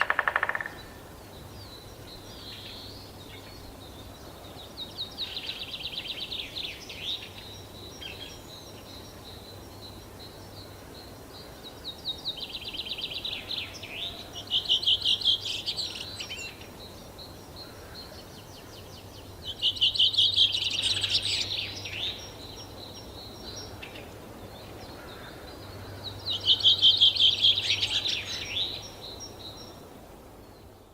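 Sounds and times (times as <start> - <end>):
bird trilling: 0.0 - 0.9.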